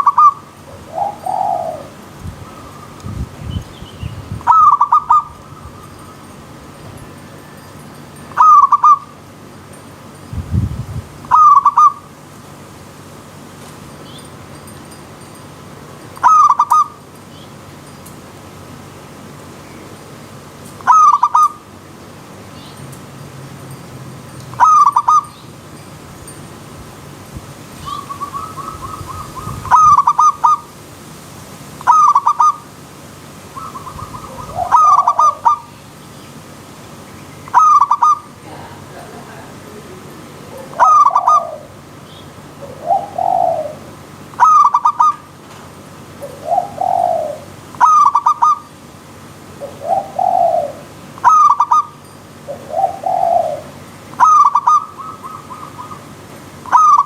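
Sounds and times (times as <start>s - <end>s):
dove stuttering coo: 0.0s - 3.0s, 27.8s - 30.6s, 33.6s - 35.7s, 40.4s - 41.8s, 42.5s - 45.2s, 46.2s - 48.6s, 49.5s - 51.9s, 52.5s - 56.1s
lower rounder dove coo: 0.0s - 3.4s, 4.4s - 6.2s, 8.3s - 9.2s, 11.2s - 12.1s, 16.2s - 17.0s, 20.8s - 21.6s, 24.6s - 25.3s, 27.8s - 30.7s, 31.8s - 32.6s, 33.6s - 35.7s, 37.5s - 45.3s, 46.1s - 48.6s, 49.5s - 57.0s.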